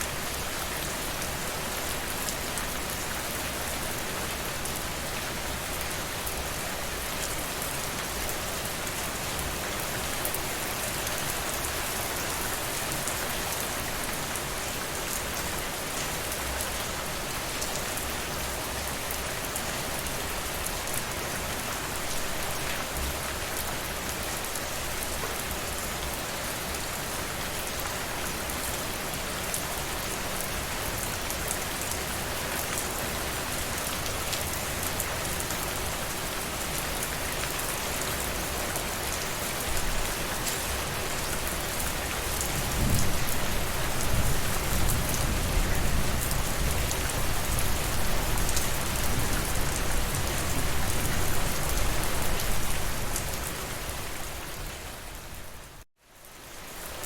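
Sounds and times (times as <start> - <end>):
rain pattering on a surface: 0.0 - 57.0.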